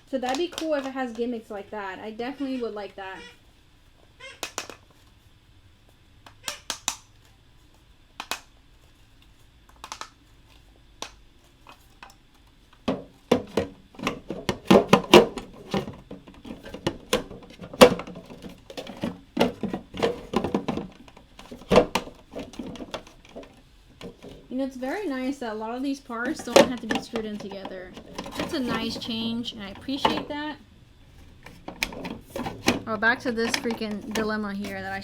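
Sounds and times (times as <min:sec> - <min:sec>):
plastic parts clicking and rattling: 0:04.3 - 0:05.0, 0:09.7 - 0:24.5, 0:26.2 - 0:30.4, 0:31.2 - 0:35.0.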